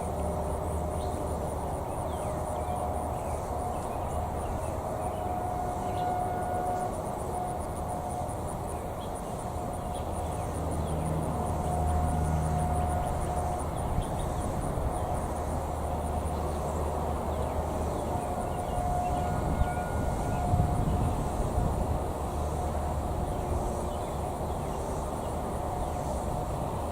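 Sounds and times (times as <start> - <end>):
distant tornado siren: 0.0 - 26.9
insects chirping: 0.0 - 26.9.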